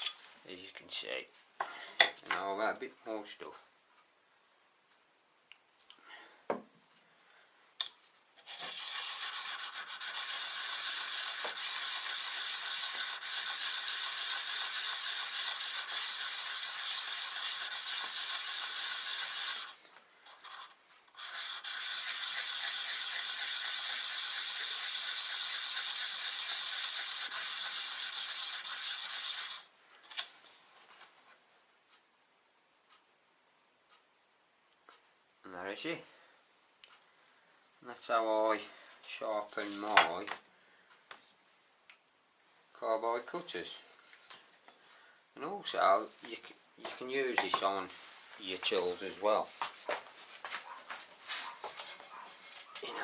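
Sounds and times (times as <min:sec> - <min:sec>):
gritty scraping on sharpening card: 0:07.8 - 0:30.3, 0:39.5 - 0:40.0.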